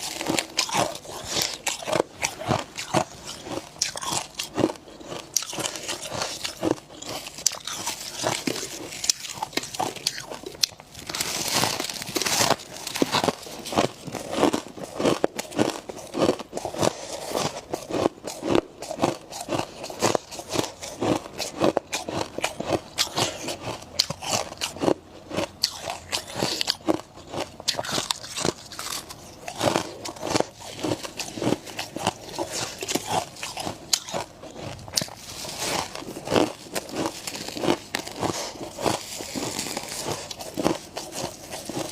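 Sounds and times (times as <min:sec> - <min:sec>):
chewing crunchy ice: 0:00.0 - 0:41.9.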